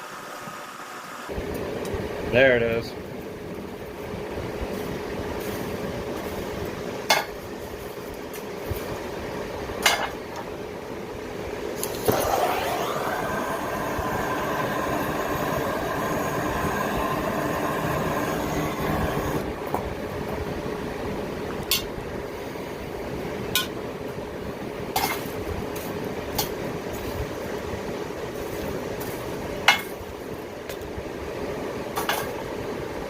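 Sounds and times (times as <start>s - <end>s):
forge blower whine: 0.0s - 9.8s, 10.6s - 33.0s
air rushing through fire: 11.6s - 23.4s.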